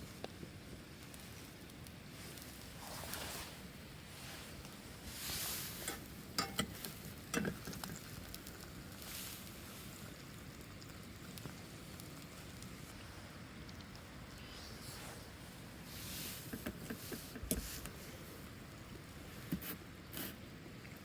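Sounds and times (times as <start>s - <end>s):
rustling: 1.0s - 7.0s.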